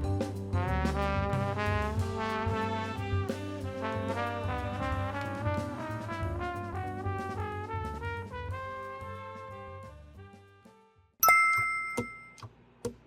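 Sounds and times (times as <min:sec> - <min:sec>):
saxophone melody: 0:02.6 - 0:06.4.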